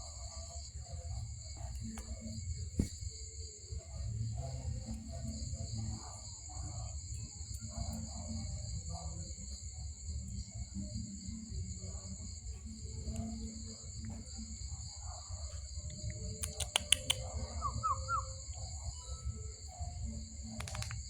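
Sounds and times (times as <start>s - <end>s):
insect chorus: 0.0s - 21.0s
sharp clicks: 16.4s - 17.2s, 20.6s - 21.0s.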